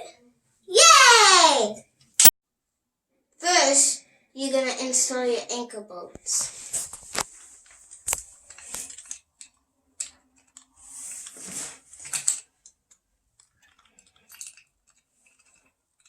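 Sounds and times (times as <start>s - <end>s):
metal parts clinking: 13.6s - 15.6s.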